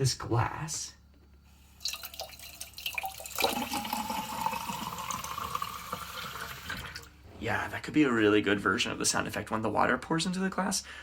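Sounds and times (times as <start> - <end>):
water pouring into a glass: 1.8 - 7.1.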